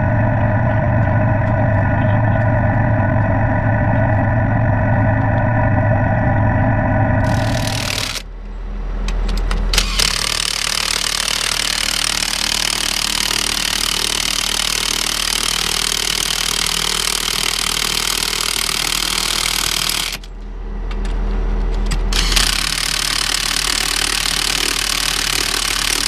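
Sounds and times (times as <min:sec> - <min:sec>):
engine idling: 0:00.0 - 0:26.0
impact wrench hammering: 0:07.2 - 0:08.2, 0:09.8 - 0:20.3, 0:22.1 - 0:26.0.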